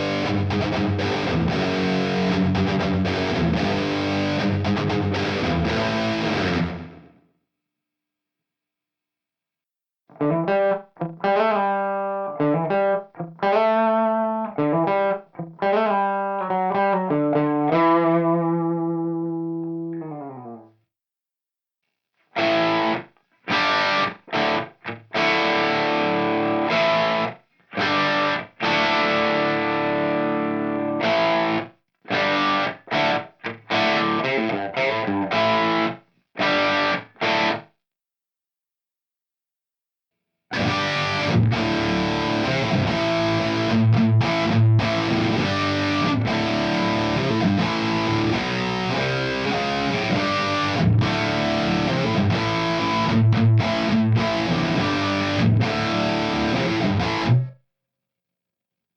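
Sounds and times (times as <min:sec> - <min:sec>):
distorted electric guitar chords: 0:00.0 - 0:07.2, 0:10.2 - 0:20.6, 0:22.4 - 0:37.6, 0:40.5 - 0:57.5
clean electric guitar chords: 0:40.5 - 0:57.5.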